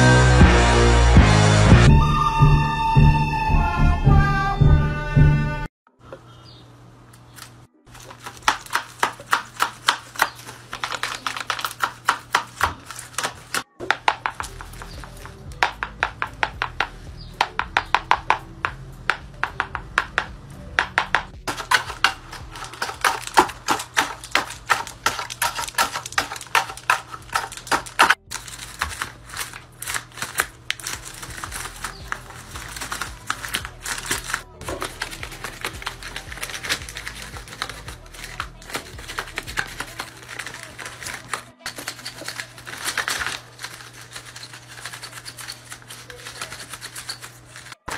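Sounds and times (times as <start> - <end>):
background music: 0.0 - 5.7, 13.6 - 41.7
paper puppet clicking and snapping: 7.4 - 16.6, 21.0 - 47.9.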